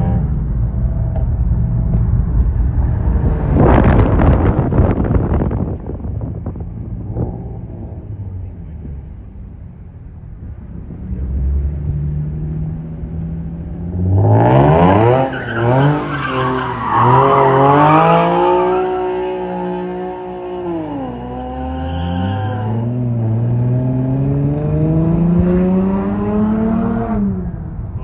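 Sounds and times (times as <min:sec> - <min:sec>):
car engine revving: 0:00.0 - 0:28.0
tyre squeal: 0:21.0 - 0:22.8.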